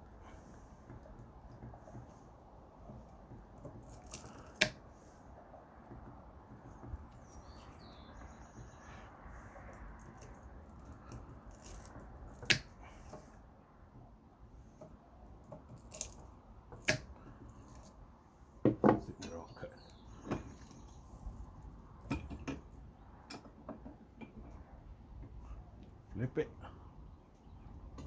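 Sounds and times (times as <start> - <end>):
wire cutters snapping through wire: 3.8 - 4.8, 11.0 - 12.8, 15.8 - 17.9.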